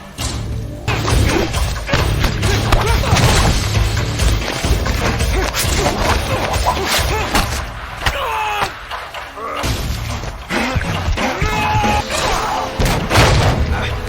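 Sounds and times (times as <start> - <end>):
punch and kick impacts: 0.2 - 9.0
low music score: 11.3 - 14.0.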